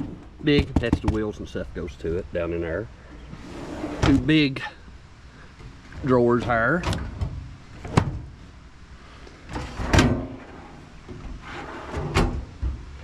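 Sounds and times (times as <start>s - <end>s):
metal drawers sliding on runners: 3.2s - 4.4s, 9.5s - 13.0s.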